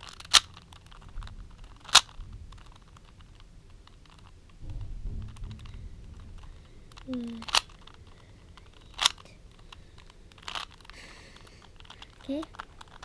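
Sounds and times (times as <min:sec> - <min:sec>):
puzzle cube layers clicking: 0:00.0 - 0:04.6, 0:05.2 - 0:13.0
sharp plastic clacks: 0:00.0 - 0:13.0
low rumble: 0:00.8 - 0:10.4.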